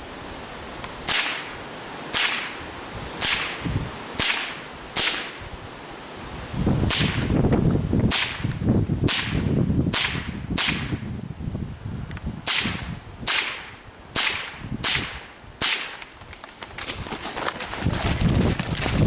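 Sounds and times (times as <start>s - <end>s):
rifle shots: 1.1s - 2.6s, 3.2s - 3.6s, 4.2s - 5.4s.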